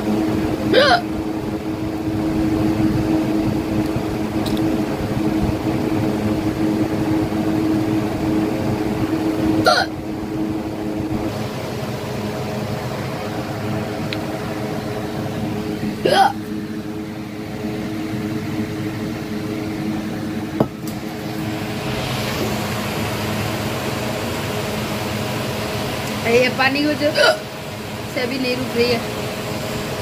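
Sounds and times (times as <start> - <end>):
steady background hum: 0.0 - 30.0
woman hiccuping: 0.7 - 1.1, 9.6 - 9.9, 16.0 - 16.5, 27.1 - 27.5.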